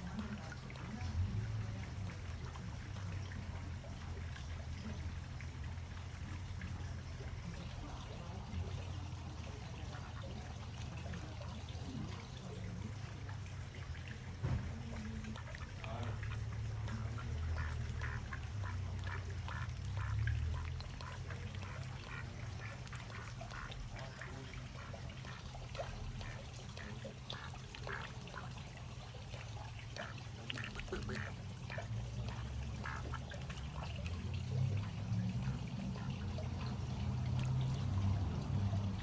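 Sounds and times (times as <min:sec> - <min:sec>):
running water: 0:00.0 - 0:39.0
ducks calling: 0:15.9 - 0:29.1, 0:29.8 - 0:34.2.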